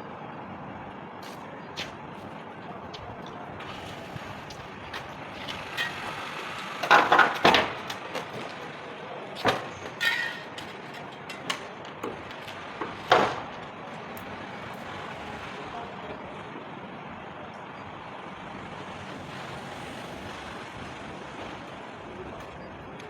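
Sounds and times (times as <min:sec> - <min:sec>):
knocks and clatter of parts: 0:04.6 - 0:13.7.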